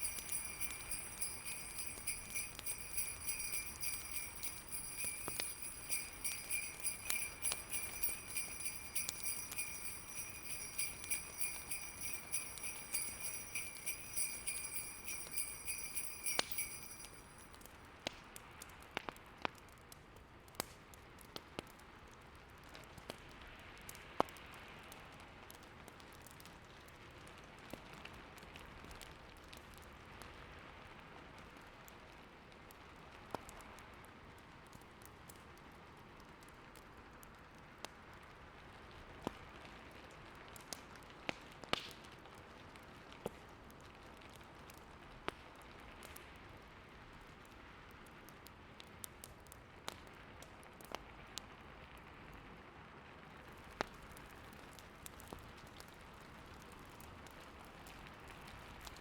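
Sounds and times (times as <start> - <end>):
fireplace crackling: 0.0 - 17.6
soft steady hiss: 0.0 - 17.6
sleigh bells jingling: 0.0 - 17.7.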